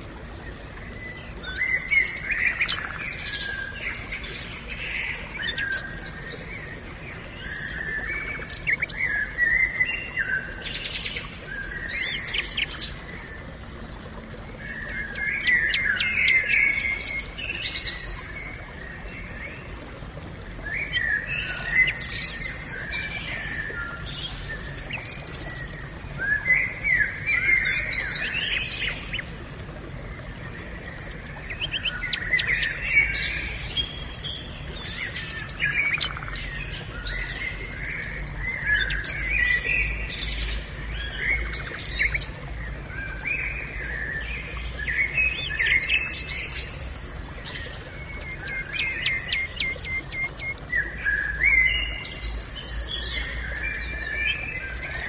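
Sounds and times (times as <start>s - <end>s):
low background hum: 0.0s - 55.0s
birds chirping and singing: 0.9s - 13.4s, 30.9s - 55.0s.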